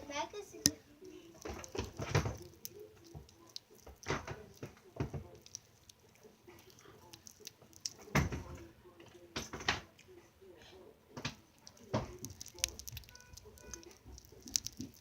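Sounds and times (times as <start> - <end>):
objects being handled: 0.6 - 8.7.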